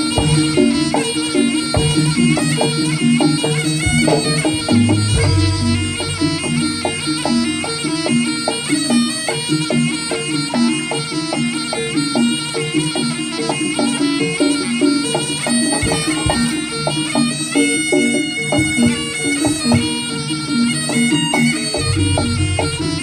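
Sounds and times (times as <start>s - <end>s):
repeated gong-chime notes: 0.0s - 23.0s
wavering reed shawm melody: 0.0s - 23.0s
regular drum strokes: 1.8s - 8.2s.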